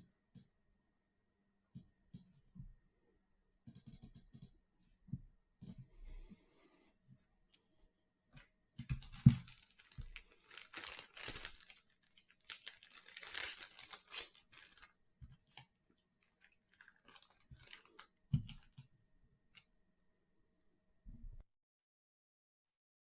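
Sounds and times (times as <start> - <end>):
wrapper tearing and crinkling: 8.8 - 18.7.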